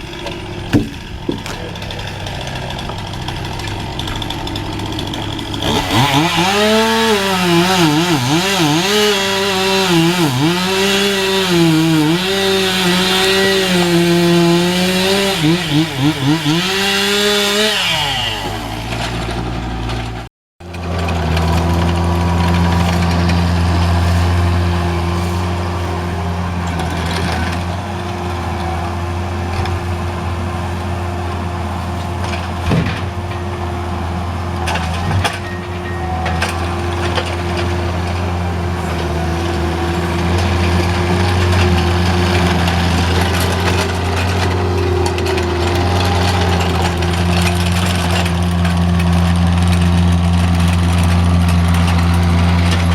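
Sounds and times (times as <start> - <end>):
large engine running steadily: 0.0 - 8.5, 18.4 - 52.9.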